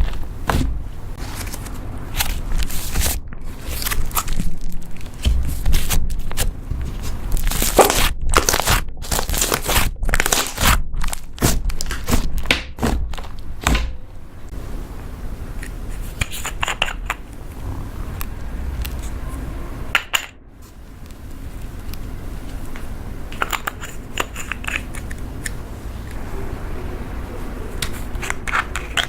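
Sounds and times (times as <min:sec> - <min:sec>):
slime squished by hand: 0:01.6 - 0:13.9.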